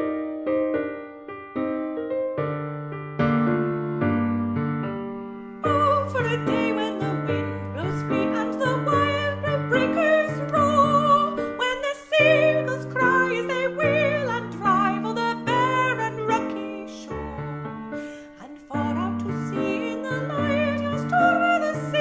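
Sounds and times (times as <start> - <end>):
piano chords: 0.0 - 22.0
person singing with vibrato: 5.6 - 22.0.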